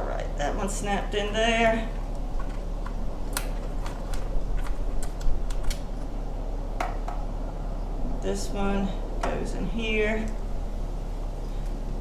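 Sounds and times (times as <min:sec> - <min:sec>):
steady low hum: 0:00.0 - 0:12.0
wiring connectors clicking: 0:02.1 - 0:06.1.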